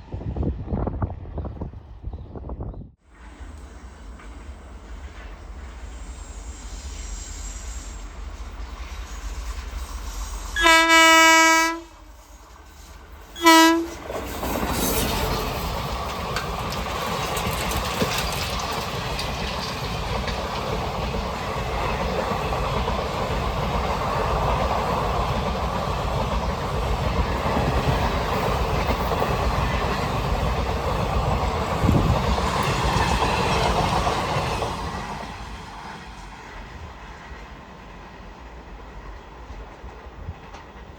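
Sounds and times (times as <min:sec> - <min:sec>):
train rumbling past: 0:00.0 - 0:40.9
train horn blasts: 0:10.6 - 0:12.3, 0:13.4 - 0:14.0
wheels clattering on rails: 0:12.9 - 0:35.1.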